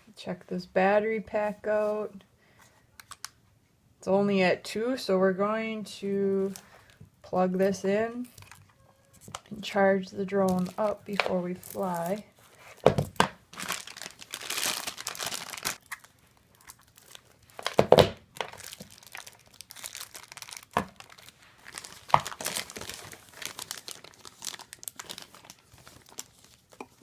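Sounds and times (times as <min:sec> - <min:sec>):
packaging crinkling and rustling: 0:08.3 - 0:09.5, 0:10.5 - 0:27.0.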